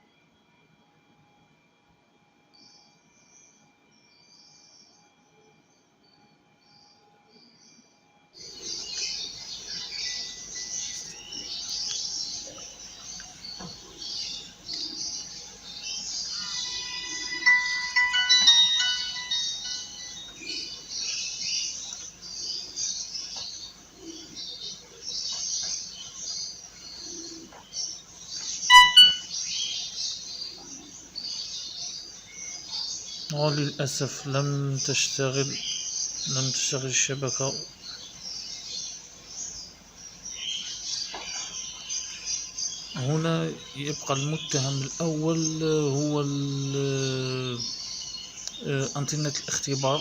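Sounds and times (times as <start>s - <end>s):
birds chirping: 8.4s - 50.0s
short electronic phone beeps: 28.7s - 29.3s.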